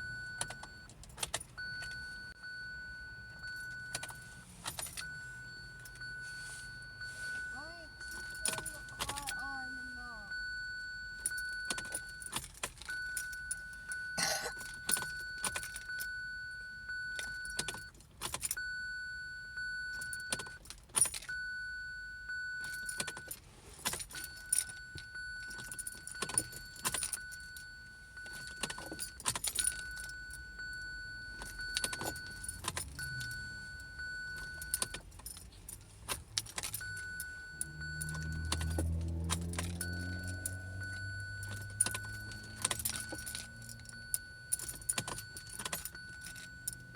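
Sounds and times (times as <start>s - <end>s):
keys jangling: 0.0s - 2.3s, 3.3s - 10.1s, 11.1s - 16.2s, 17.1s - 18.6s, 19.9s - 21.4s, 22.6s - 46.9s
ignition key turning: 0.0s - 6.2s, 6.8s - 9.5s, 10.3s - 18.8s, 19.9s - 21.6s, 22.3s - 46.9s
high-pitched warning tone: 1.6s - 12.2s, 36.8s - 46.9s.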